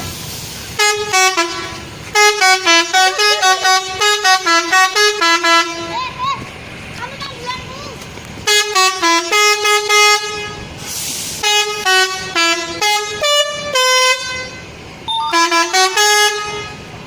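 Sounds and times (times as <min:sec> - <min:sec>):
air hiss: 0:00.0 - 0:00.8, 0:10.8 - 0:11.6
musical air horn tune: 0:00.8 - 0:05.9, 0:11.4 - 0:16.9.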